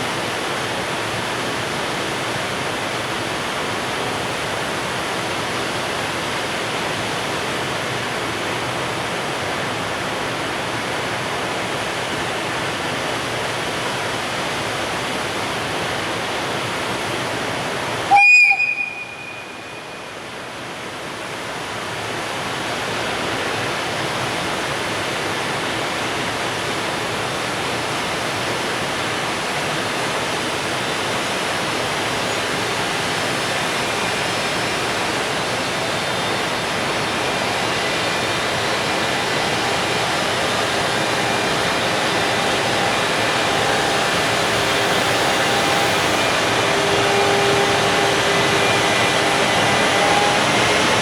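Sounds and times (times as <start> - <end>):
freight train rolling: 0.0 - 51.0
locomotive whine rising in pitch: 17.9 - 20.3, 28.0 - 51.0.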